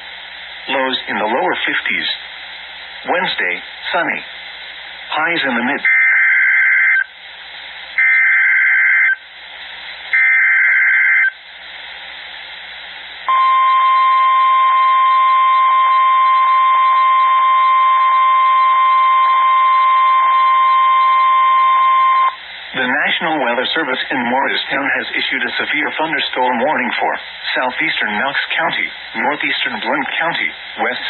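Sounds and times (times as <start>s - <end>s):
radio hiss: 0.0s - 15.8s, 19.3s - 31.0s
steady alarm tone: 8.0s - 9.2s, 10.2s - 11.3s, 13.3s - 22.4s.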